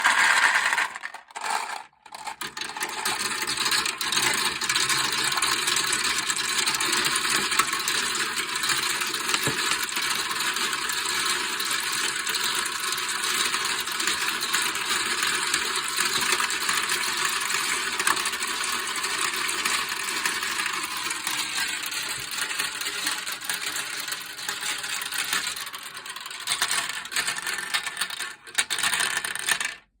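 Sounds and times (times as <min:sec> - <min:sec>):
marbles clattering down a run: 0:00.0 - 0:29.8.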